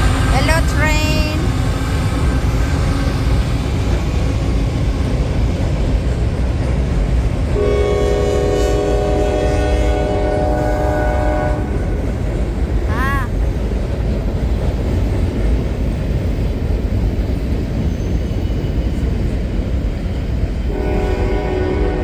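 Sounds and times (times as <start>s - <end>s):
train rumbling past: 0.0s - 22.0s
train horn blast: 7.6s - 12.2s, 20.7s - 22.0s.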